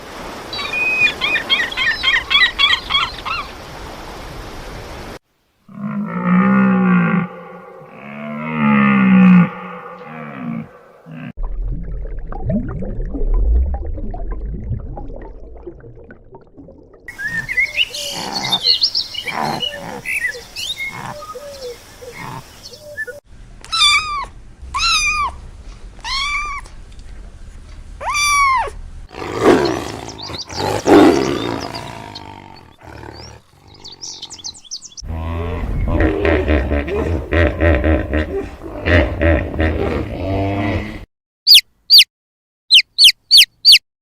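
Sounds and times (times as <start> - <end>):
arched animal calls: 5.7 - 11.3, 23.7 - 25.4
loud rough animal call: 5.7 - 11.4, 29.1 - 41.1
low rumbling growl: 5.7 - 11.4, 29.1 - 41.0
animal chirps: 41.5 - 42.1, 42.7 - 43.8.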